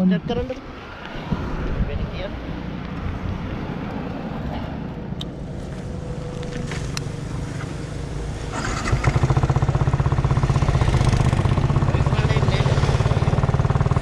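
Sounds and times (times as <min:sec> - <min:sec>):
motorcycle engine running: 0:05.7 - 0:14.0.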